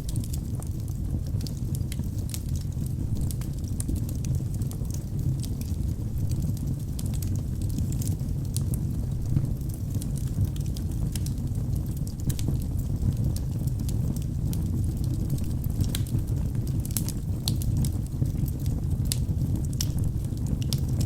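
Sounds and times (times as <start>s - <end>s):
burning wood crackling and popping: 0.0s - 21.0s
low rumble of flames: 0.0s - 21.0s.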